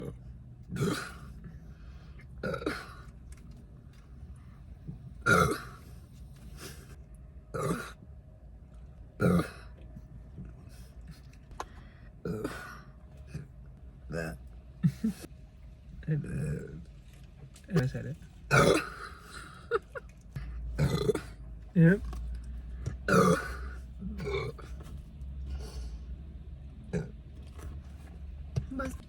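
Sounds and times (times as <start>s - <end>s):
girl burping: 0.7s - 1.2s, 2.4s - 3.0s, 5.3s - 5.8s, 12.3s - 12.8s, 18.5s - 19.2s, 20.8s - 21.3s, 23.1s - 24.6s.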